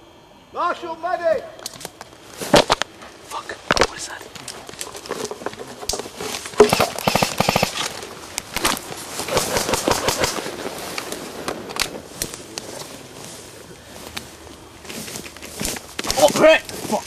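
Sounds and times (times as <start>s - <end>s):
airsoft rifles firing: 6.5s - 10.5s.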